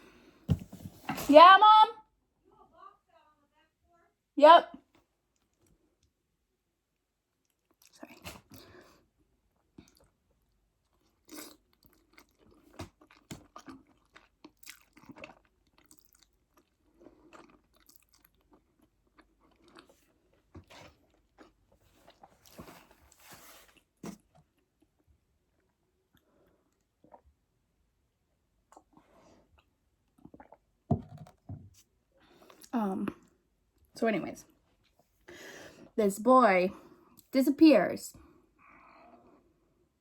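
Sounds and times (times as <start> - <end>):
crunching and chewing: 7.4 - 9.0, 9.8 - 23.2, 28.6 - 30.7.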